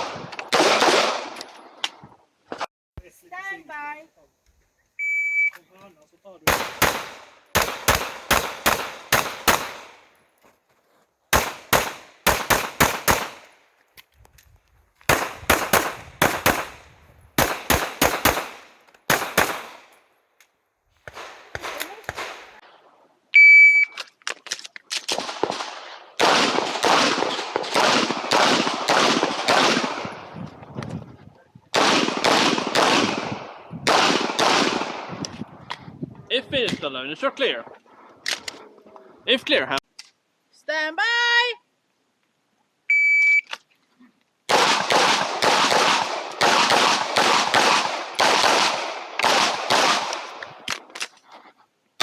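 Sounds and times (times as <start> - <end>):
pistol shots: 0.0 - 1.4, 6.5 - 10.1, 11.3 - 13.6, 15.1 - 20.0, 21.1 - 22.6, 25.1 - 30.2, 31.7 - 35.1, 44.5 - 50.8
shot timer beep: 5.0 - 5.6.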